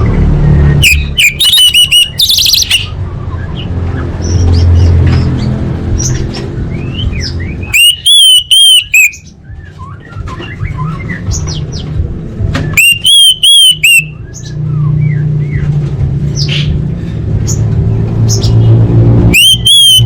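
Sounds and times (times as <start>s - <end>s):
soft bird chirps and twitters: 0.0s - 20.0s
bird whistled song: 0.4s - 5.3s, 6.0s - 15.7s, 19.3s - 20.0s.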